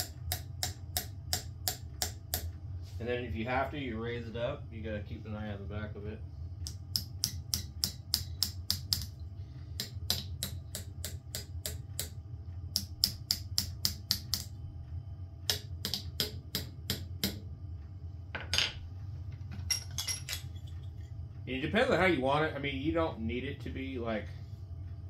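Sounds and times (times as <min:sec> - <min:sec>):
hammer tapping metal plate: 0:00.0 - 0:02.6, 0:06.6 - 0:09.2, 0:09.8 - 0:14.6, 0:15.5 - 0:17.5.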